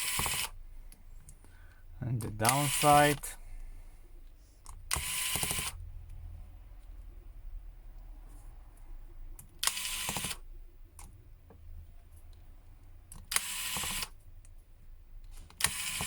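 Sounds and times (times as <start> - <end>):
small screwdriver buzzing: 0.0 - 0.6, 4.9 - 5.8, 9.6 - 10.4, 13.3 - 14.1, 15.6 - 16.0.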